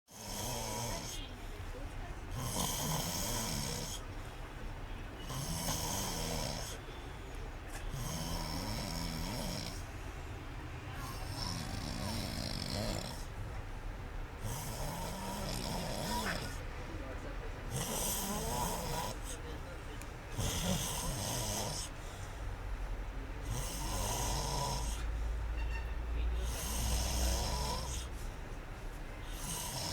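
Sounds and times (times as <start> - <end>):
person snoring: 0.1 - 1.2, 2.3 - 4.0, 5.2 - 6.8, 7.9 - 9.8, 11.0 - 13.3, 14.4 - 16.6, 17.7 - 19.4, 20.4 - 22.0, 23.4 - 25.1, 26.4 - 28.1, 29.3 - 29.9
quiet breathing: 0.2 - 25.6, 26.2 - 29.9.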